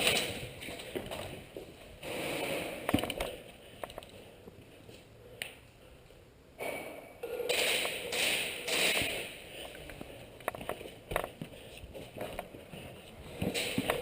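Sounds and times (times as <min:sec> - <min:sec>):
person breathing hard: 0:02.5 - 0:10.4, 0:11.2 - 0:13.6.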